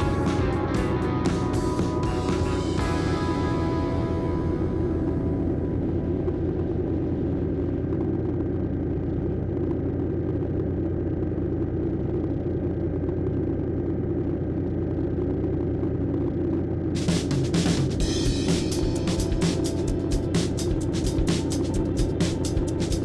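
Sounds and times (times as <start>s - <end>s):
engine low rumble: 0.0s - 23.0s.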